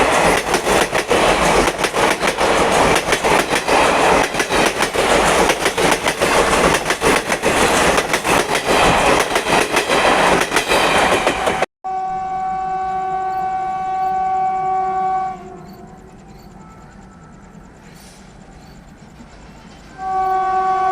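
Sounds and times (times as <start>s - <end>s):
train rushing past: 0.0s - 11.7s, 12.5s - 20.9s
locomotive horn: 11.8s - 17.4s, 19.9s - 20.9s.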